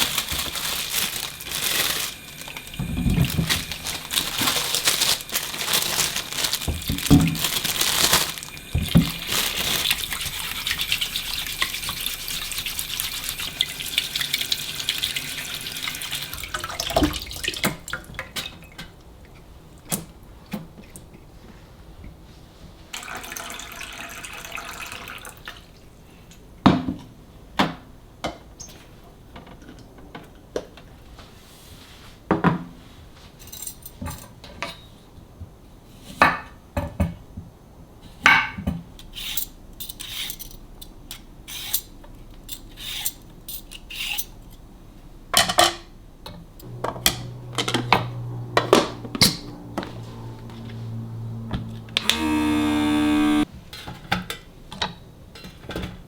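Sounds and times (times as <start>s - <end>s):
low steady hum: 46.6s - 53.5s.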